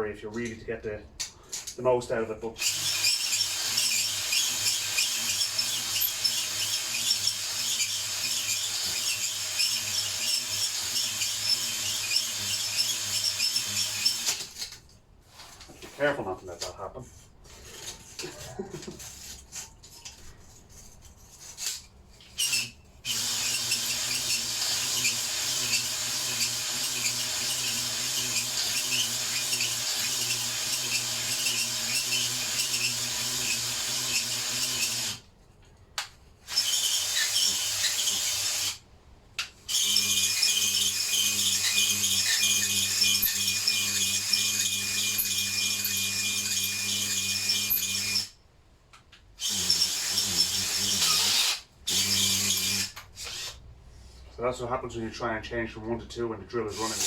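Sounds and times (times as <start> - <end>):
drill spinning a cylinder hone: 2.6 - 14.5, 22.4 - 35.2, 36.5 - 38.8, 39.7 - 48.3, 49.4 - 53.6, 56.7 - 57.0.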